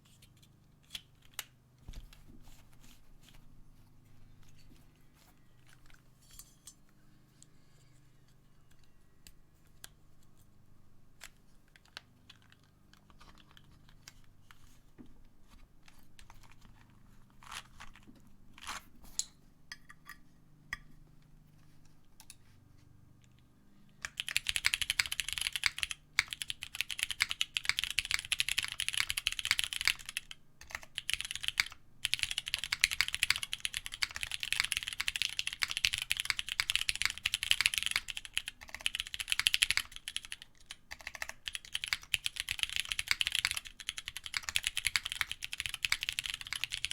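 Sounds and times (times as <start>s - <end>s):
mechanical keyboard typing: 11.2s - 13.7s, 24.0s - 46.9s.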